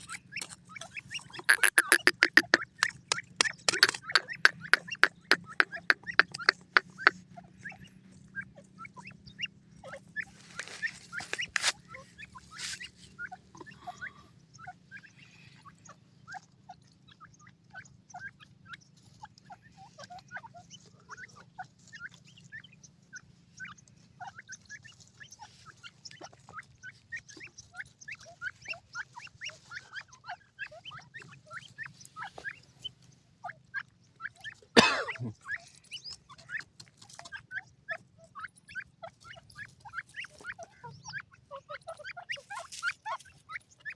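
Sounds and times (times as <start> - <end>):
chicks peeping: 0.0 - 43.9
ticking clicks: 1.4 - 7.1
scuffling noises: 10.2 - 13.2.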